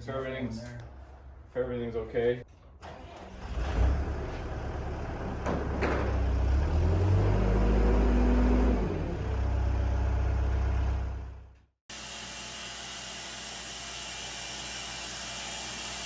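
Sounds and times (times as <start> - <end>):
sawmill cutting log: 11.9 - 16.0.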